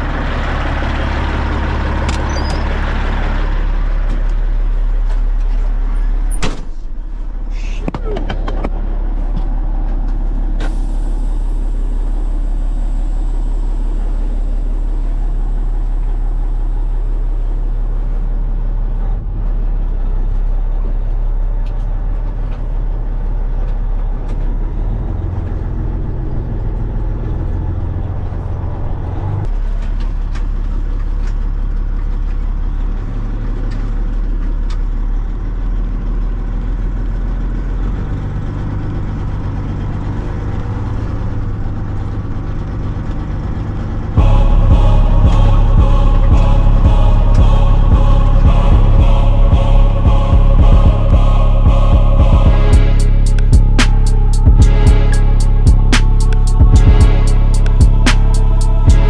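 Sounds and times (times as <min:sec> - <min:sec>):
heavy truck engine running: 0:00.0 - 0:59.0
hiss: 0:10.6 - 0:14.4.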